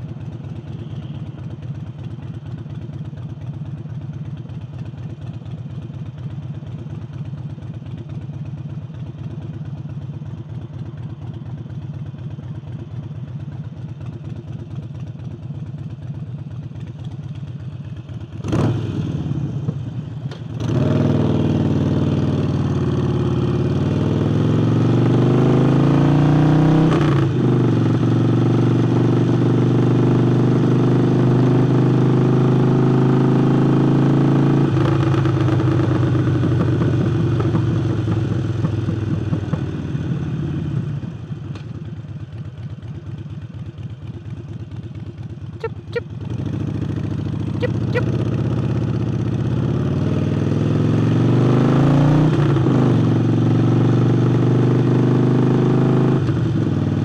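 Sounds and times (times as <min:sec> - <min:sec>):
motorcycle engine rumbling: 0:00.0 - 0:23.7, 0:34.6 - 0:51.0.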